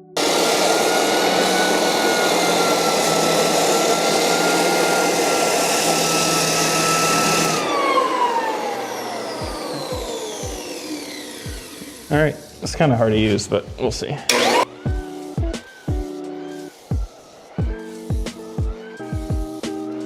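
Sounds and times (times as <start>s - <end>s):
floor sander motor whine: 0.0s - 12.2s, 14.3s - 14.7s.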